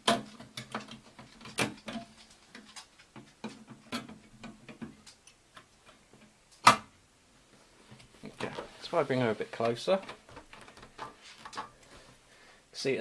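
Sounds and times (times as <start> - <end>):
typewriter body clicking and knocking: 0.0 - 2.1.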